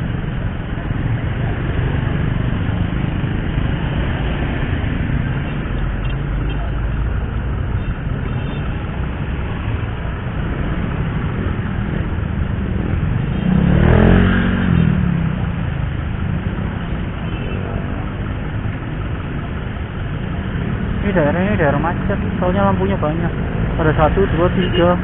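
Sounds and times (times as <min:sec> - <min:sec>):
motorcycle road noise: 0:00.0 - 0:25.0
vehicle engine passing: 0:07.5 - 0:17.2.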